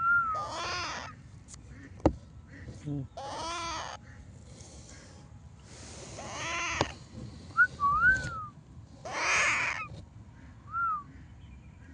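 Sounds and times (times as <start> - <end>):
parrot squawking: 0.4 - 1.2, 3.2 - 4.0, 6.2 - 6.9, 9.0 - 9.9.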